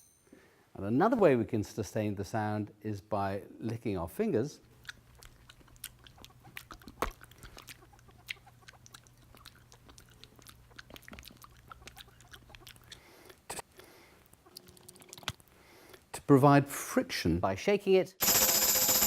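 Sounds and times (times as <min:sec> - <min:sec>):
wet licking clicks and smacks: 0:04.7 - 0:13.6, 0:14.2 - 0:16.0.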